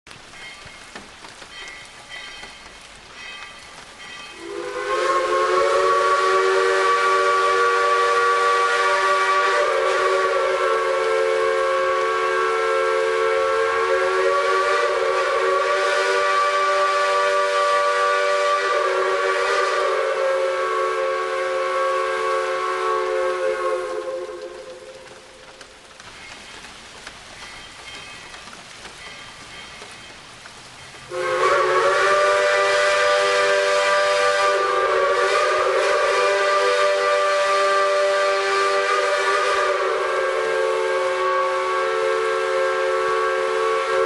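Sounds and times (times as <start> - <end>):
steam hiss: 0.1 - 44.0
steam locomotive whistle: 3.2 - 25.4, 31.0 - 44.0.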